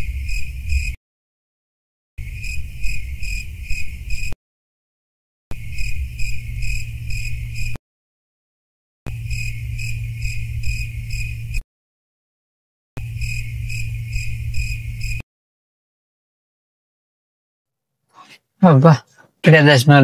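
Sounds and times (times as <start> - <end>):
cricket chirping: 0.0 - 1.0, 2.2 - 4.4, 5.5 - 7.8, 9.1 - 11.6, 13.0 - 15.2
steady low hum: 0.0 - 1.0, 2.2 - 4.4, 5.5 - 7.8, 9.1 - 11.6, 13.0 - 15.2.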